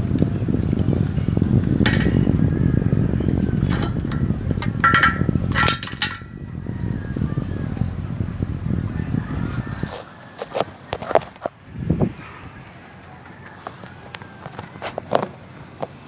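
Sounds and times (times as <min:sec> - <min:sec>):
wind buffeting microphone: 0:00.0 - 0:10.0, 0:11.6 - 0:12.8
metallic clinks and clanks: 0:00.2 - 0:02.4, 0:03.6 - 0:06.4.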